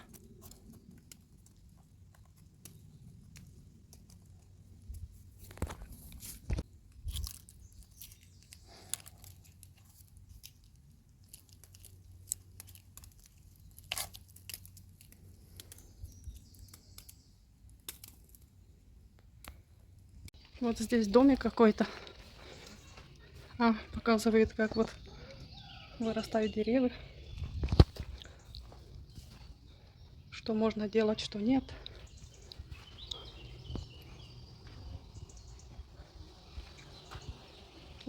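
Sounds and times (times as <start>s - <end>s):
twigs crunching underfoot: 0.0s - 18.5s, 27.1s - 29.8s.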